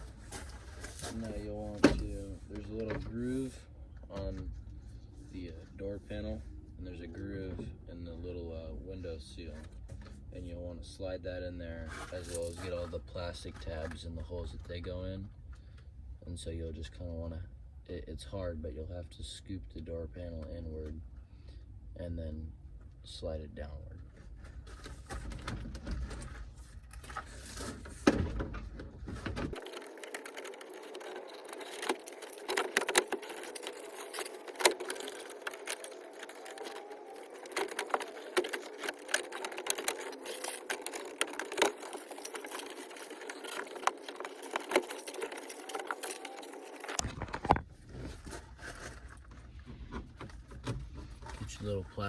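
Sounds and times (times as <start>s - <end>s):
plastic clattering: 24.6s - 51.7s.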